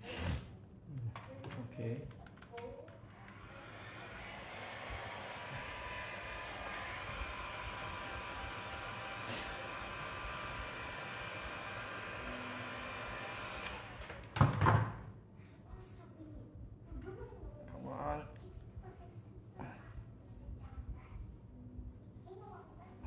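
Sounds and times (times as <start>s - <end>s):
hot-air blower whirring: 2.9s - 15.0s.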